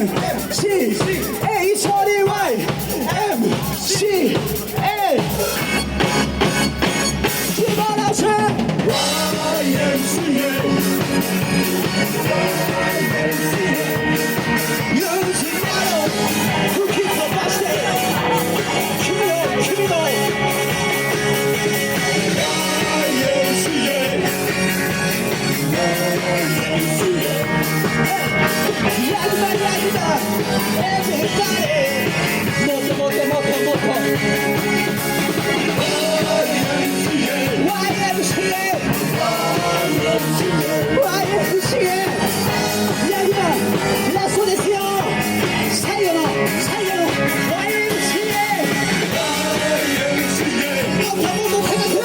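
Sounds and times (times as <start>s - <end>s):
lead vocalist singing: 0.0s - 5.6s, 7.5s - 52.0s
live band playing: 0.0s - 52.0s.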